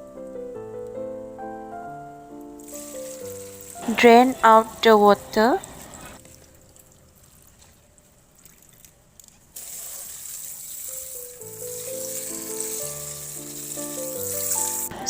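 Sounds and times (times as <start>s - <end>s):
background music: 0.0s - 6.2s, 11.4s - 15.0s
water pouring into strainer: 9.6s - 14.6s.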